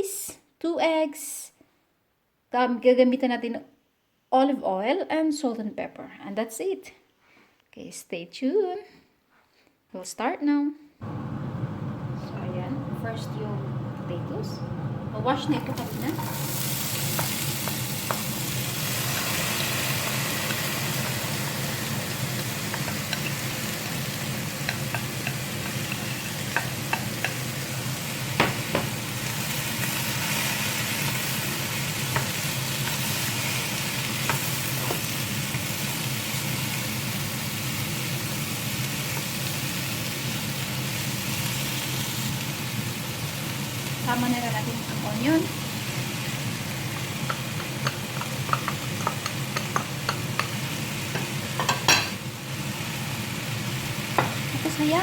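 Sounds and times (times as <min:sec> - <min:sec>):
potatoes sizzling in oil: 0:15.1 - 0:55.0
utensil clicking against pan: 0:47.2 - 0:51.3.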